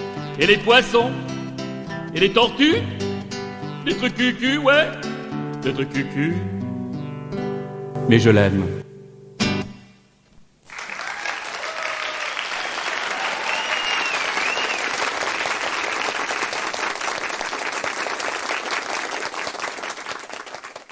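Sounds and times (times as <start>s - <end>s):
audience applauding: 10.7s - 20.9s
person whistling: 13.4s - 14.9s.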